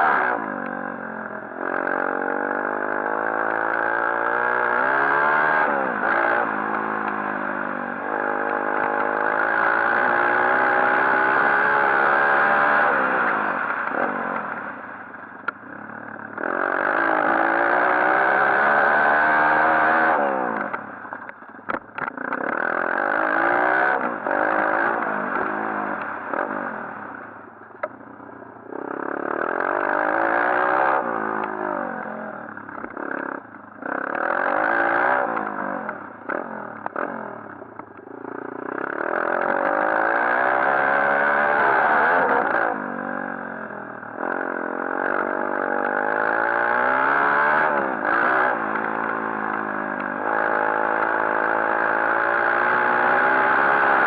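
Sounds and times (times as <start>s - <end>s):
motorbike engine revving: 0.0s - 54.0s.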